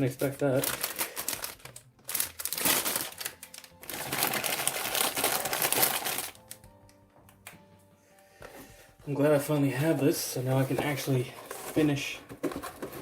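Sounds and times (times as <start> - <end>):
plastic bags crinkling: 0.0 - 6.6.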